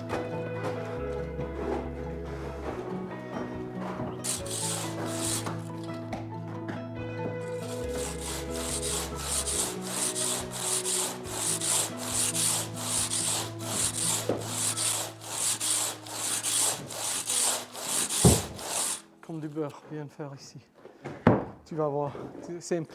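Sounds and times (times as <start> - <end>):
handsaw rasping through stone: 4.2 - 6.0, 7.5 - 19.1.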